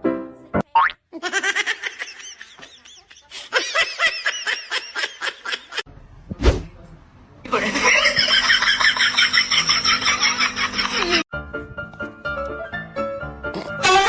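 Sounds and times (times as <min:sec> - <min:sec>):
high-pitched laughter: 0:07.6 - 0:11.2.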